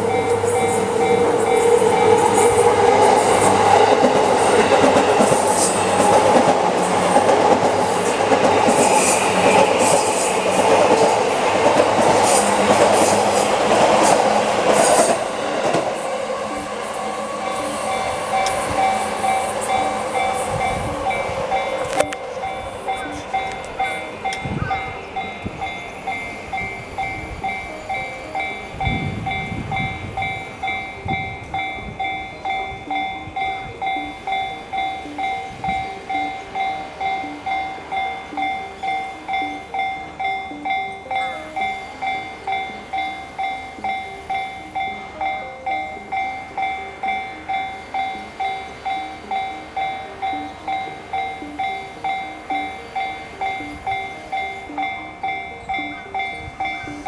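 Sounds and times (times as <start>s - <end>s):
level-crossing warning bell ringing: 0.0s - 57.0s.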